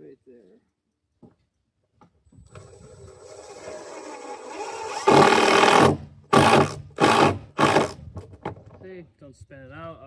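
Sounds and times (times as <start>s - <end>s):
power drill drilling into wood: 2.5s - 8.0s.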